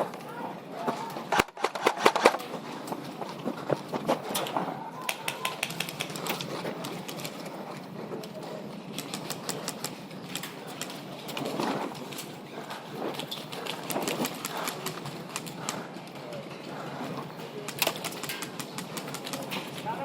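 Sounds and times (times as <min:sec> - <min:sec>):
faint voices: 0:00.0 - 0:20.0
sharp clicks and ticks: 0:05.1 - 0:07.5, 0:08.9 - 0:11.4, 0:17.6 - 0:19.8.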